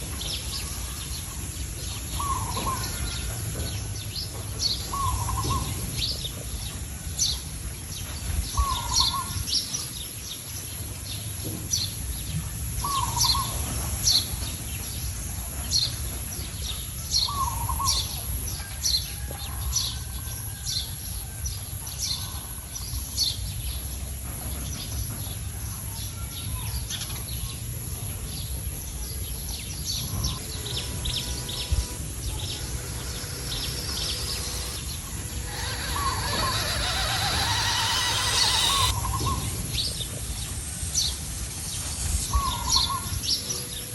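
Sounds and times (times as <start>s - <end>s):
birds chirping high: 0.0s - 12.0s, 28.2s - 39.4s.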